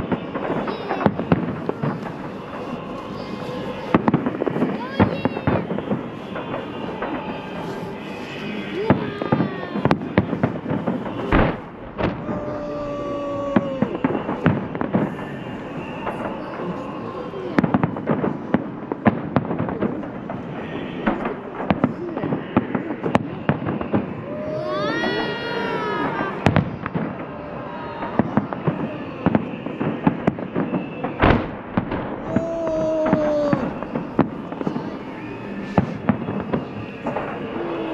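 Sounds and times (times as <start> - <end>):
fireworks bangs and crackles: 0.0 - 37.9.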